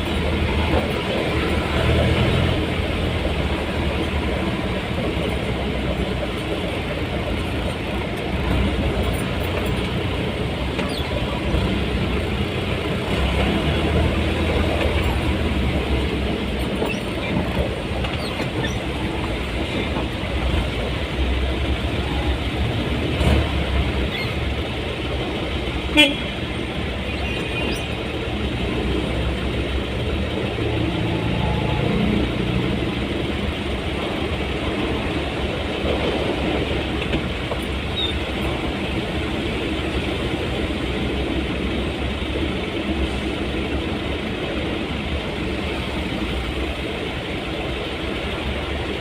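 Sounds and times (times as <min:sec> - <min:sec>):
road traffic rumble: 0:00.0 - 0:49.0
car horn toot: 0:26.0 - 0:26.4.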